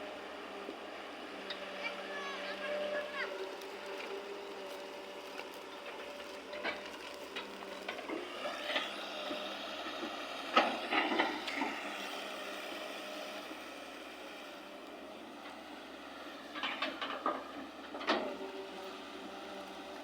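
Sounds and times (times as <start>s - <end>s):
excavator engine hum: 0.0s - 20.0s
excavator knocks and clanks: 6.5s - 11.8s, 16.4s - 18.6s.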